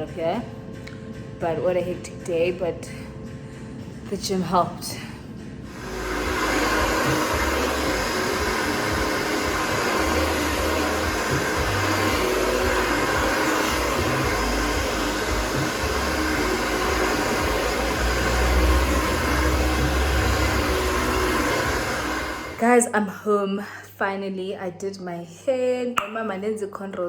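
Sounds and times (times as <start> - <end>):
loud rushing noise: 5.7 - 22.6.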